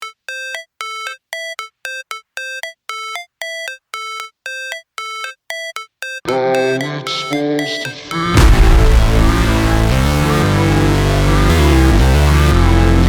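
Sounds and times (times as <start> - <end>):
synthesizer notes: 0.0 - 13.0
electronic music with heavy bass: 6.2 - 13.0.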